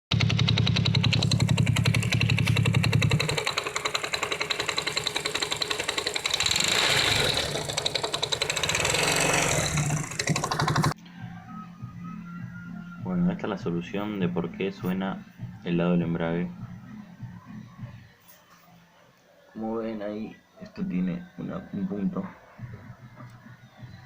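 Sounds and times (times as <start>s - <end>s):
motorcycle engine running: 0.1s - 11.0s
rapid rattling clatter: 0.1s - 11.0s.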